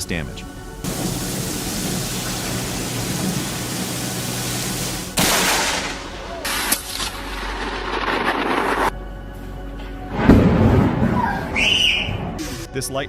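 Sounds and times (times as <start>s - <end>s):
lightning crack: 4.9s - 8.9s, 10.1s - 11.3s.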